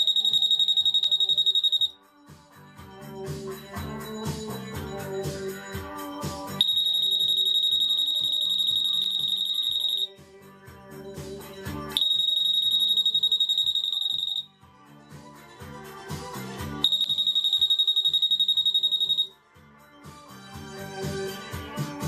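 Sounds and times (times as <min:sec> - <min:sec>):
high steady alarm beep: 0:00.0 - 0:02.0, 0:06.6 - 0:10.1, 0:12.0 - 0:14.5, 0:16.8 - 0:19.3
background music: 0:01.1 - 0:07.3, 0:08.6 - 0:12.4, 0:14.4 - 0:22.0.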